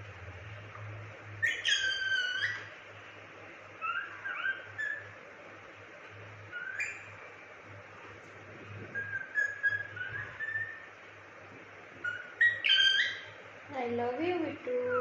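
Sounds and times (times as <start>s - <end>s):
parrot whistled call: 1.4s - 2.7s, 3.8s - 5.2s, 6.5s - 7.1s, 8.9s - 11.0s, 12.0s - 13.4s
soft parrot chirps: 1.4s - 2.8s, 3.8s - 5.2s, 6.5s - 7.2s, 8.9s - 11.0s, 12.0s - 13.4s.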